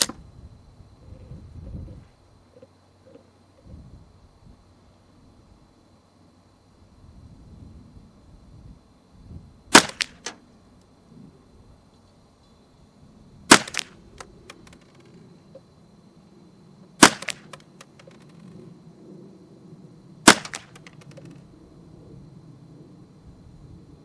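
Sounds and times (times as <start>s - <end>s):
rifle shots: 9.7s - 10.4s, 13.5s - 14.0s, 17.0s - 17.6s, 20.2s - 21.0s.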